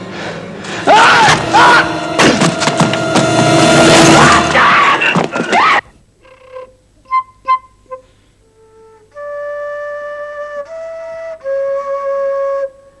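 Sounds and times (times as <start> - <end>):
solo flute melody: 6.2 - 13.0.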